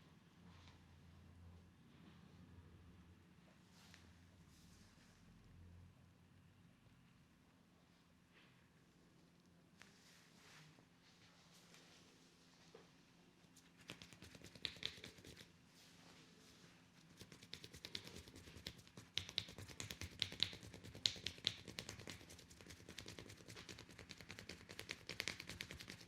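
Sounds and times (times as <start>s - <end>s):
hands crackling clicks and taps: 13.8s - 15.5s, 17.2s - 26.0s.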